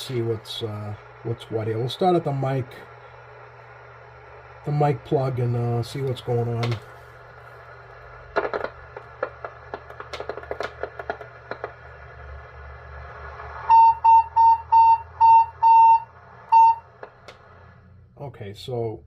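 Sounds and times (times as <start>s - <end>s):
crackling clicks: 6.0s - 7.0s, 7.8s - 12.2s, 17.0s - 17.6s
whistle tone beeps: 13.7s - 16.9s.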